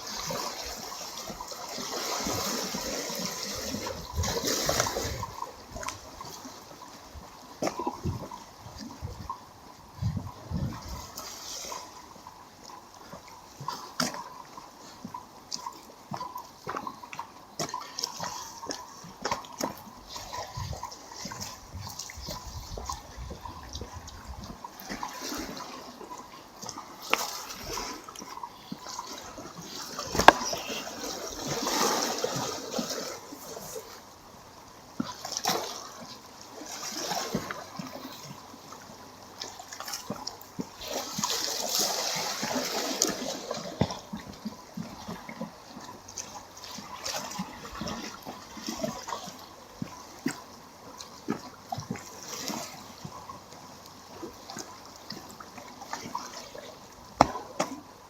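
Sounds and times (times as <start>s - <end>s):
waves splashing on rocky shore: 0.0s - 6.8s, 24.8s - 34.0s, 35.0s - 38.8s, 39.5s - 45.2s.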